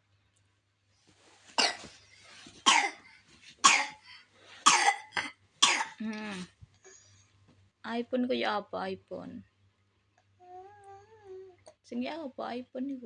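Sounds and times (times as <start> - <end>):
child coughing: 1.6 - 2.0, 2.7 - 6.0.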